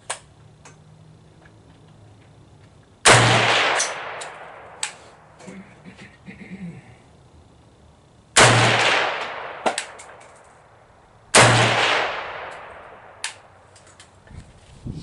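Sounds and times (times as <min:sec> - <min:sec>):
rifle shots with echo: 0:03.0 - 0:04.9, 0:08.4 - 0:10.4, 0:11.3 - 0:13.5.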